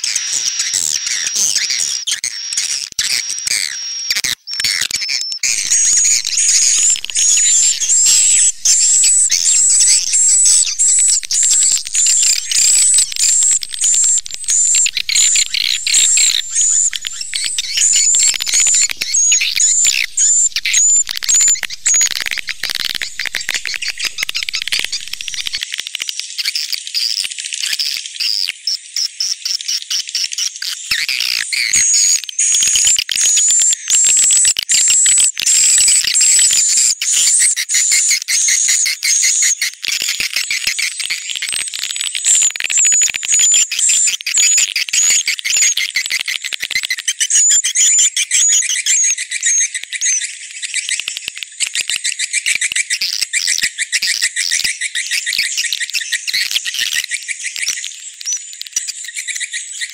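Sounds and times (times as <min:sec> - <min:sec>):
swiftlets twittering chirps: 0:05.4 - 0:25.6.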